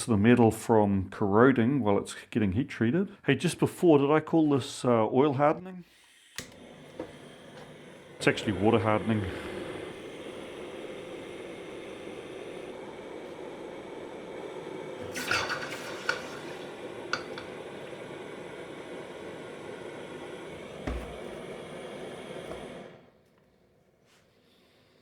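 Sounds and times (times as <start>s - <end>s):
gas torch flame burning: 5.8s - 23.4s.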